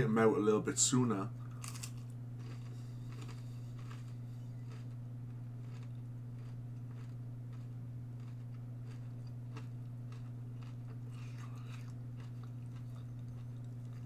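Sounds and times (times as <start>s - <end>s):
steady low hum: 0.0s - 14.0s
person chewing crunchy food: 1.5s - 14.0s.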